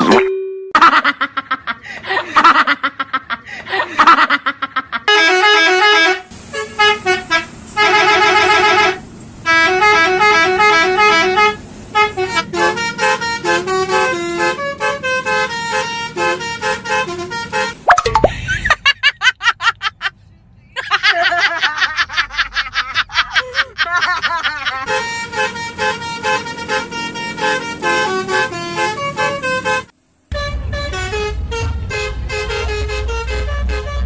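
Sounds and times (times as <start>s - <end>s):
multi-tone bus horn tune: 5.0s - 17.8s, 24.8s - 34.0s.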